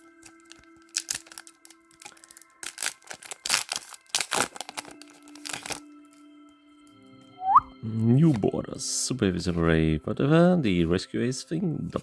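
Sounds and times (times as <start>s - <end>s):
foil pack crinkling and tearing: 0.0s - 5.9s.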